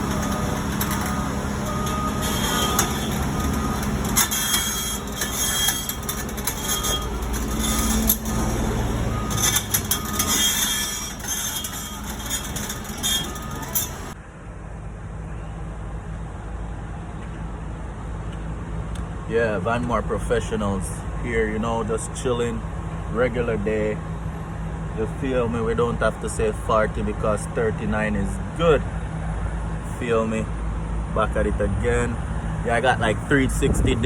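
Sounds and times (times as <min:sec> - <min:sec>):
metallic clattering and rattling: 0:00.0 - 0:14.2
diesel engine humming: 0:00.0 - 0:34.0.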